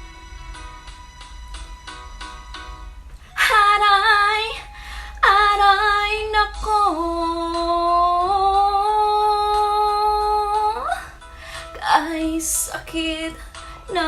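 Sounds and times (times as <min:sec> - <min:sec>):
woman singing long notes: 0:03.4 - 0:11.1.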